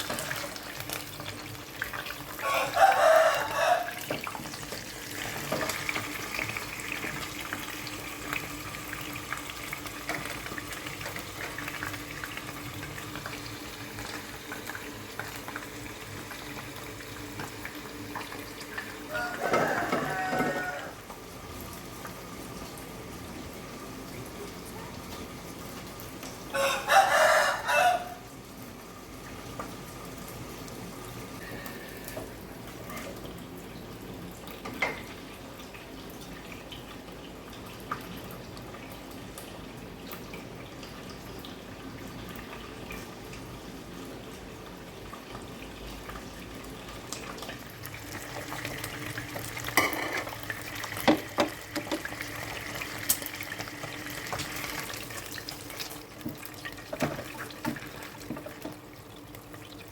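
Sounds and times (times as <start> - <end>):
tap water running: 0.0 - 59.9
rooster crowing: 2.4 - 4.2, 19.1 - 21.0, 26.5 - 28.3.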